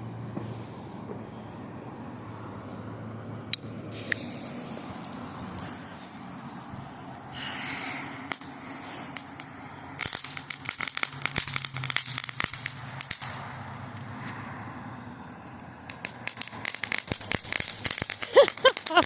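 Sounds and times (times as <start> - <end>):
firework hissing: 3.9 - 14.5, 15.1 - 19.0
fireworks crackling pops: 7.9 - 14.4, 15.6 - 19.0.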